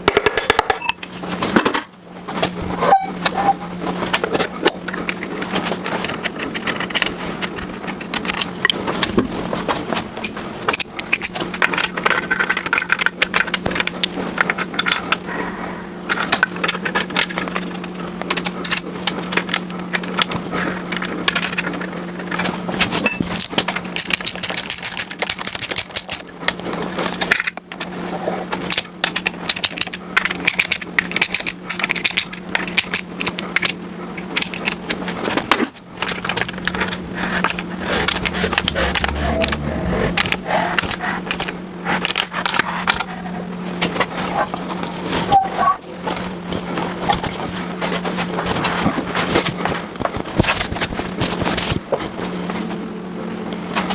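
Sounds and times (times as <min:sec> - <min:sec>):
tools and engine parts clinking: 0:00.0 - 0:01.9, 0:10.2 - 0:15.2, 0:20.9 - 0:26.2
steady hum: 0:29.5 - 0:51.9.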